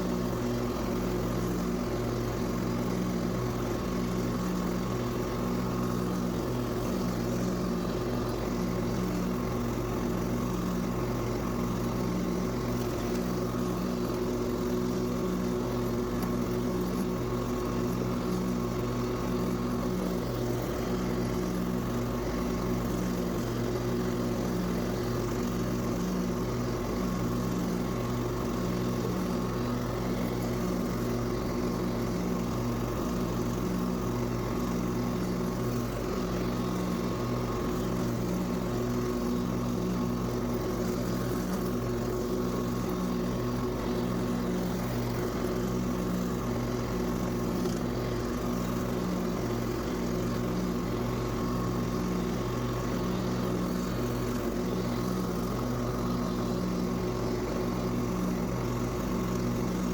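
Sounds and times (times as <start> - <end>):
lawn mower engine running: 0.0 - 59.9.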